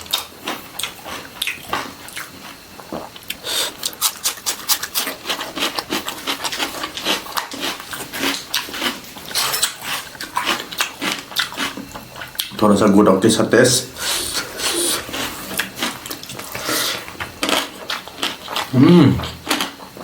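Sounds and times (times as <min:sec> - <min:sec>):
wet chewing clicks: 0:03.0 - 0:12.6, 0:14.1 - 0:20.0.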